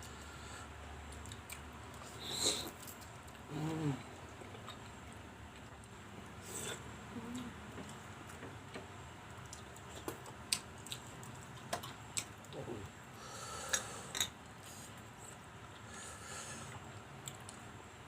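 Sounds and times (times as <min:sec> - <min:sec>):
faint chewing: 0:01.0 - 0:12.9.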